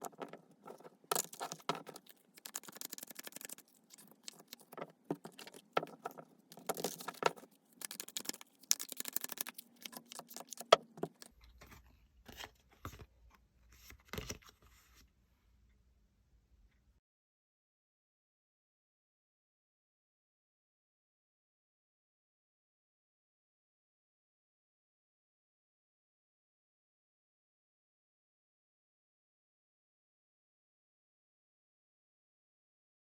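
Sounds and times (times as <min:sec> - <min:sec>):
cards shuffled by hand: 0:00.0 - 0:11.3.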